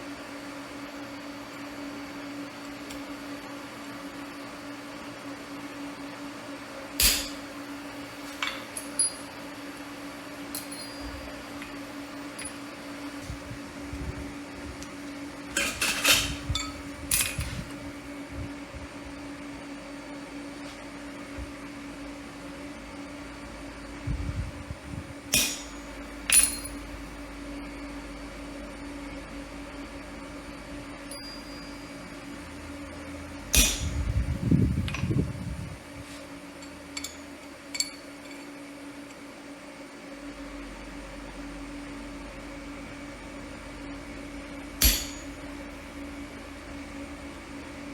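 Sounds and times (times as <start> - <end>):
low electrical hum: 0.0 - 47.9
metal clinks and knocks: 10.6 - 11.8, 26.3 - 26.9, 36.6 - 38.6.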